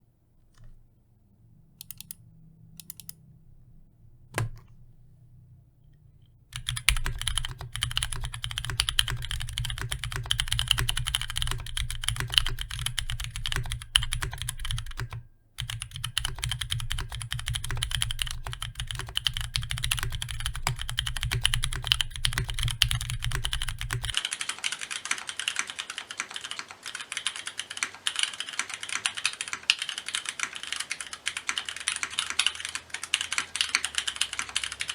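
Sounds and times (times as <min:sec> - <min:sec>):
mechanical keyboard typing: 0:01.8 - 0:02.2, 0:02.8 - 0:03.3, 0:04.3 - 0:04.8, 0:06.5 - 0:34.9.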